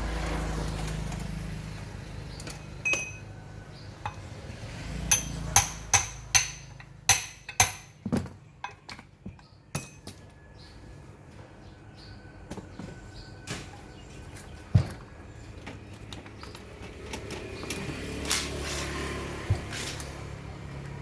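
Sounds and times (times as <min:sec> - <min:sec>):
metallic taps and clinks: 0:02.4 - 0:03.3, 0:05.1 - 0:08.0.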